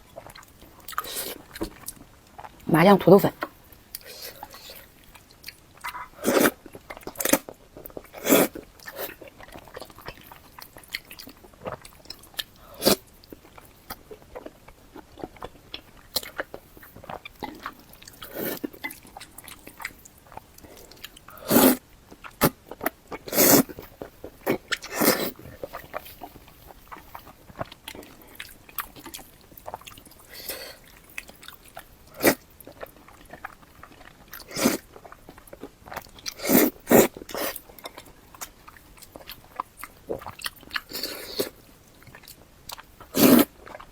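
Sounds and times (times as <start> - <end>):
person chewing noodles: 0.1 - 2.7, 3.4 - 43.9
wet mouth sounds: 42.2 - 43.9.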